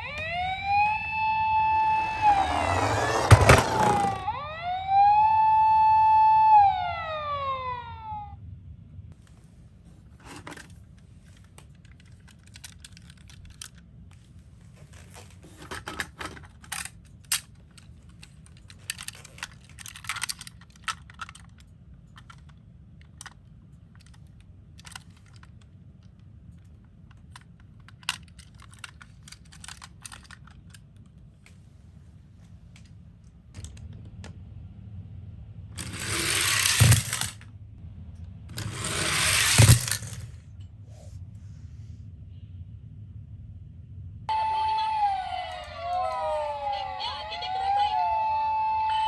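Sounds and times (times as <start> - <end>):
toy cars clicking and clattering: 2.0 - 4.3, 10.2 - 31.2, 35.8 - 37.5, 38.5 - 40.7
faint low hum: 8.1 - 44.4.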